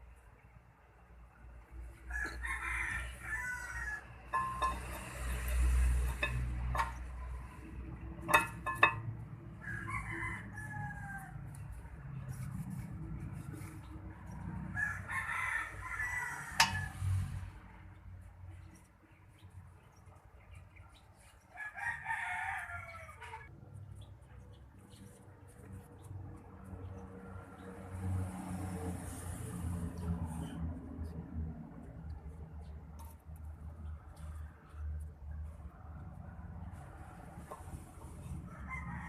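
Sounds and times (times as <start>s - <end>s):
rooster crowing: 2.1s - 5.0s, 9.5s - 11.5s, 14.7s - 17.1s, 21.5s - 23.5s, 38.4s - 39.0s.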